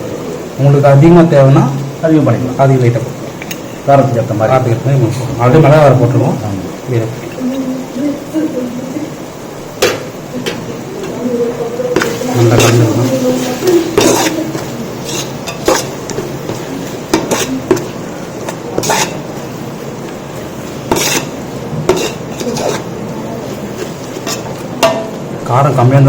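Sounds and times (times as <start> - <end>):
oil sizzling: 0.0 - 26.0
metal ladle clanking against pot: 14.0 - 17.9, 18.8 - 19.2, 20.9 - 22.8.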